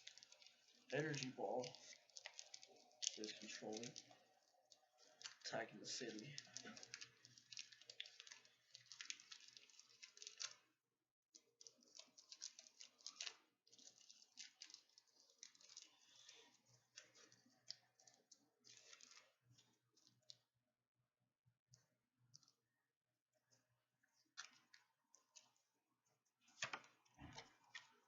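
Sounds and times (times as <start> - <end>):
foil wrapper crinkling: 0.0 - 10.7, 11.4 - 20.4.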